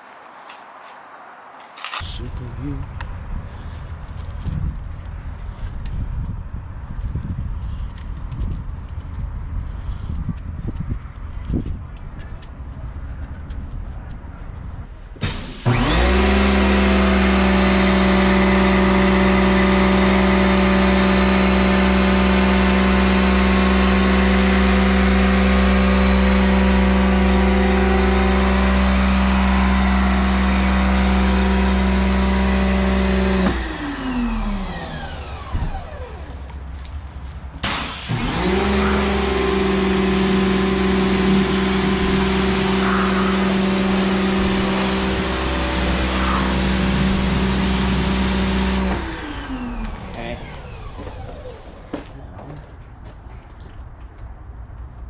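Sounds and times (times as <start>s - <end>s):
pressure washer motor and pump: 15.2s - 52.2s.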